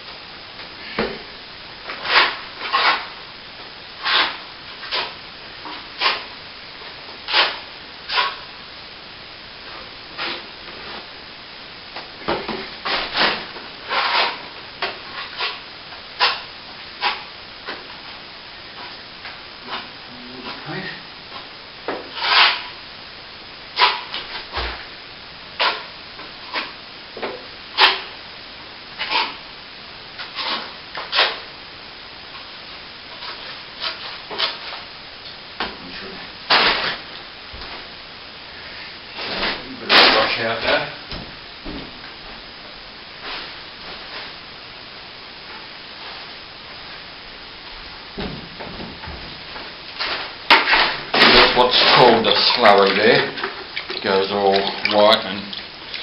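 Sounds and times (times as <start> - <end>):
tools scraping wet plaster: 2.0 - 3.1, 4.0 - 5.2, 7.3 - 8.4, 12.9 - 14.4, 22.1 - 22.7, 50.6 - 56.0
trowel scraping wet plaster: 22.1 - 22.7.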